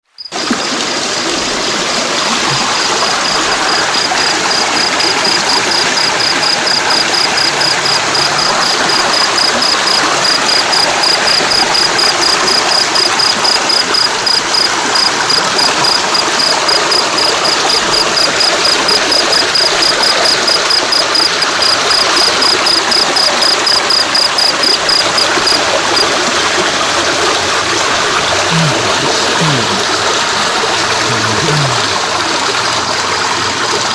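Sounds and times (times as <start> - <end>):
stream water flowing: 0.1 - 33.9.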